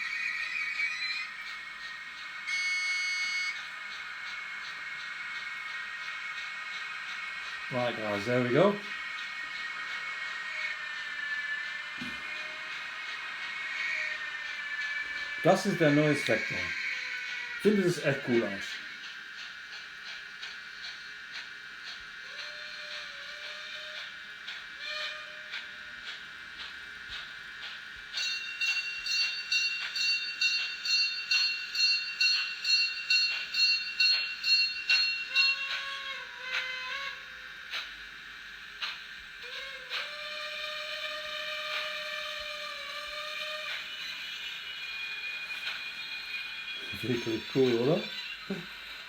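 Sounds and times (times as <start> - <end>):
whistle-like tones: 0.0 - 18.8, 28.2 - 36.6, 43.1 - 49.0
electric model locomotive hum: 0.0 - 49.0
regular clicks: 0.0 - 49.0.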